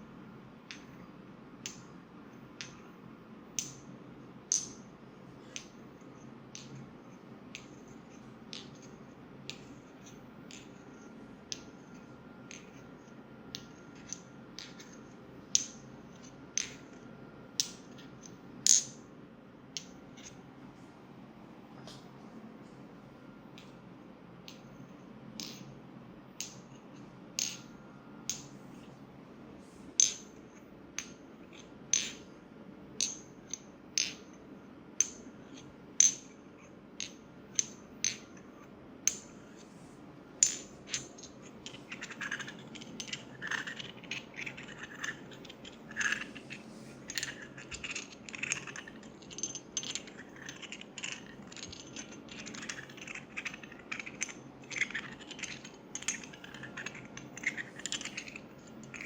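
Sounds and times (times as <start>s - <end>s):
scratchy clicking and scraping: 41.5s - 59.0s.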